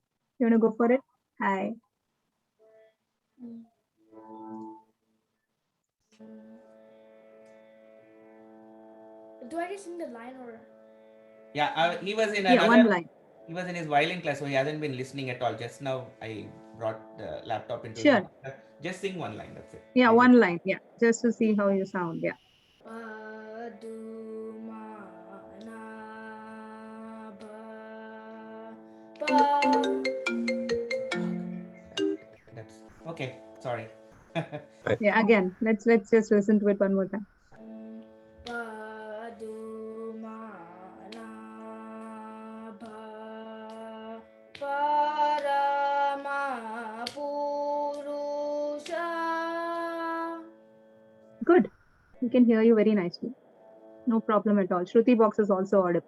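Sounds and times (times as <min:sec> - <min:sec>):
person singing long held notes: 0:06.2 - 0:06.8, 0:12.5 - 0:13.0, 0:22.8 - 0:33.2, 0:37.6 - 0:50.5
shruti box drone: 0:11.8 - 0:13.0, 0:29.2 - 0:44.1
sharply struck melodic sound: 0:29.3 - 0:32.4.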